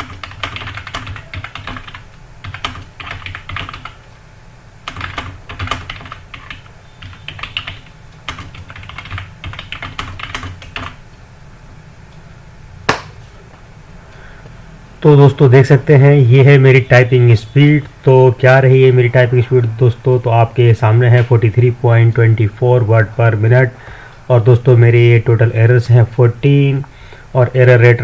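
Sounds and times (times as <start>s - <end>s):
fast typing on keyboard: 0.0s - 4.0s, 4.8s - 11.0s.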